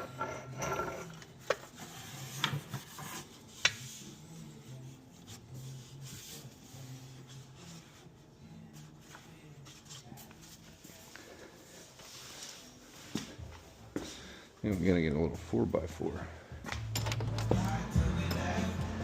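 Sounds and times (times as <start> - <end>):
light rubbing and scraping: 0.0 - 13.3.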